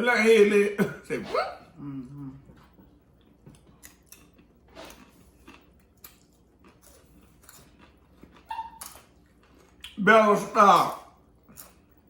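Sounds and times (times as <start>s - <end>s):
chewing food: 2.4s - 10.0s.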